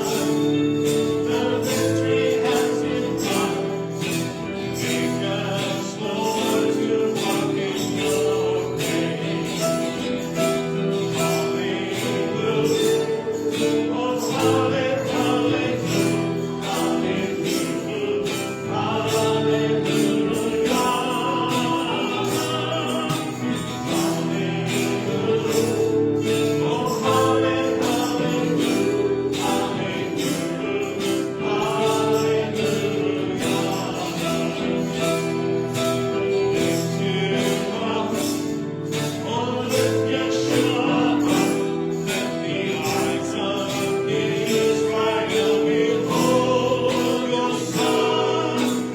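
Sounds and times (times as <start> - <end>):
choir singing: 0.0 - 48.9.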